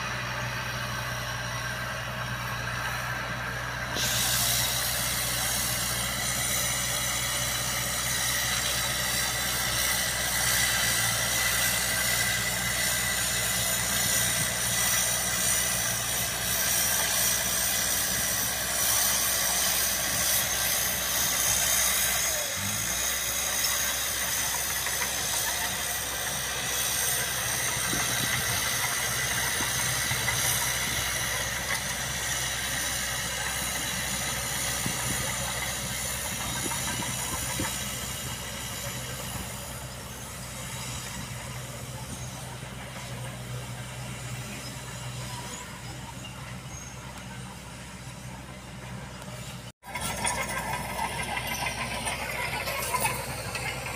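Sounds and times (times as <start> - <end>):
bulldozer diesel engine running: 0.0 - 53.9.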